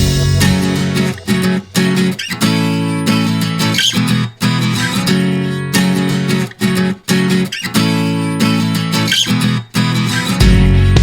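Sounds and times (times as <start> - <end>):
strummed acoustic guitar chords: 0.0 - 11.0.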